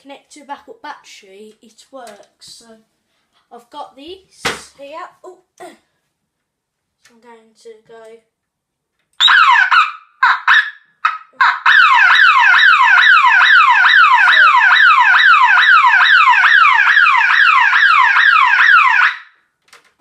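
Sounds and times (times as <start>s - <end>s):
burglar alarm siren wailing: 9.2s - 19.4s.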